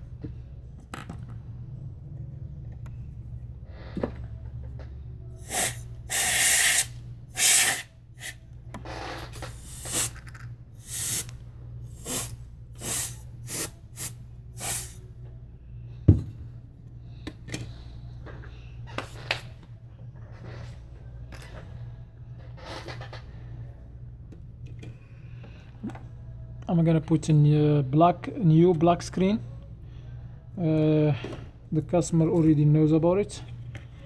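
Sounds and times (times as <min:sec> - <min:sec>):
steady low hum: 0:00.0 - 0:34.0.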